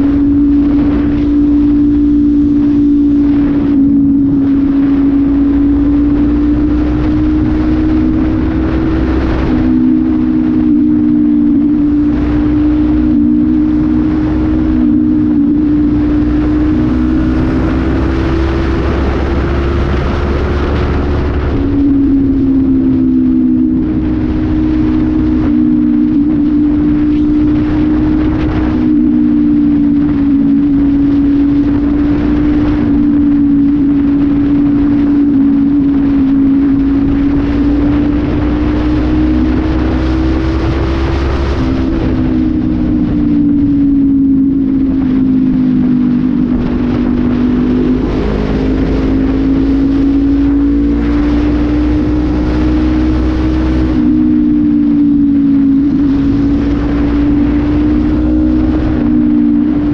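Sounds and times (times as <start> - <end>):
motorcycle engine running: 0.0 - 59.9
wind rushing over microphone: 0.0 - 59.9.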